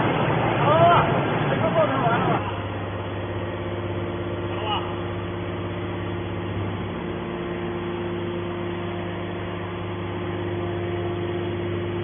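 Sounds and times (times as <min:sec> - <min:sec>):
steady mechanical drone: 0:00.0 - 0:12.0.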